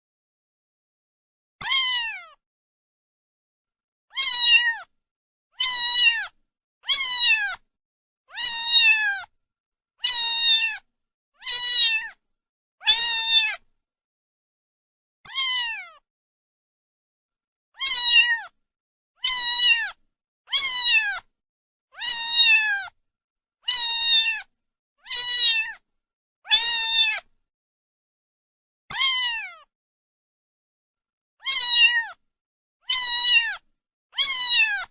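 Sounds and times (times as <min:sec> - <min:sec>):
cat meowing: 0:01.6 - 0:02.4, 0:04.1 - 0:04.9, 0:05.6 - 0:07.6, 0:08.3 - 0:09.3, 0:10.0 - 0:12.2, 0:12.8 - 0:13.6, 0:15.3 - 0:16.0, 0:17.8 - 0:18.6, 0:19.2 - 0:21.3, 0:22.0 - 0:23.0, 0:23.6 - 0:25.8, 0:26.5 - 0:27.3, 0:28.9 - 0:29.7, 0:31.4 - 0:32.2, 0:32.8 - 0:33.6, 0:34.2 - 0:34.9.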